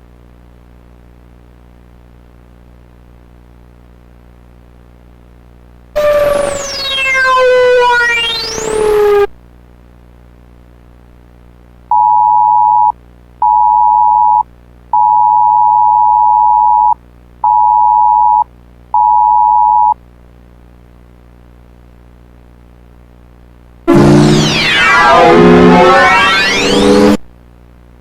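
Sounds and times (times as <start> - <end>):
electronic beep tone: 6.0 - 9.2, 23.9 - 27.2.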